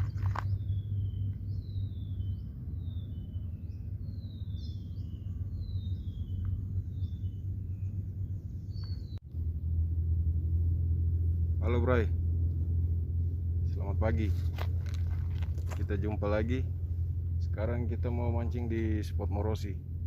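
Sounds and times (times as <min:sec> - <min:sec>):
birds whistling falling notes: 0:00.0 - 0:09.2
steady low rumble: 0:00.0 - 0:20.0.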